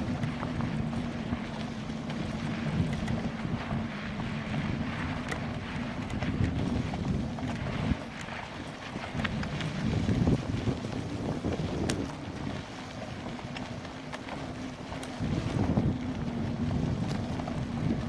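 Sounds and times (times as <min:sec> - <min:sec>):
small clicks and rattles: 0:00.0 - 0:15.2
wind buffeting microphone: 0:00.0 - 0:18.0.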